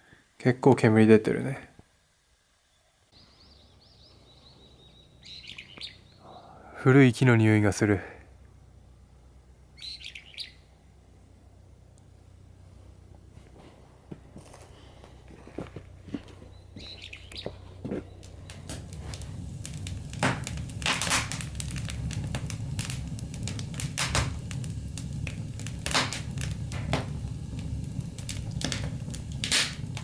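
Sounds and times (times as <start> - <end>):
low rumble: 10.5 - 30.0
fire crackling and popping: 13.1 - 30.0.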